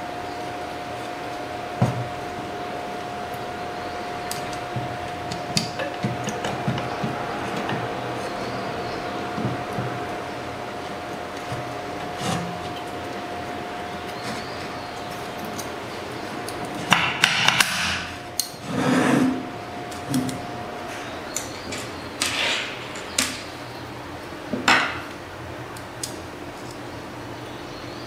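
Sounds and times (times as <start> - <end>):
hand tools clicking and knocking: 4.3 - 8.0.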